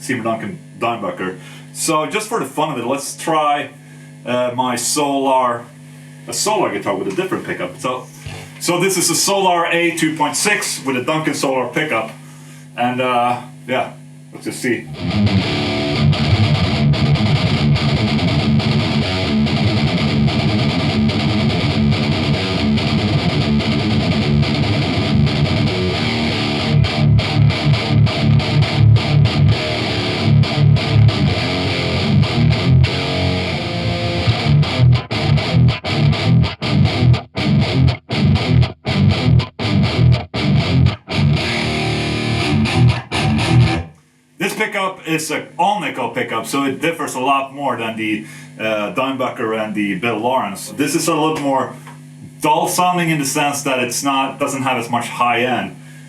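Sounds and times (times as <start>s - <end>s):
distorted electric guitar riffing: 14.9s - 44.0s.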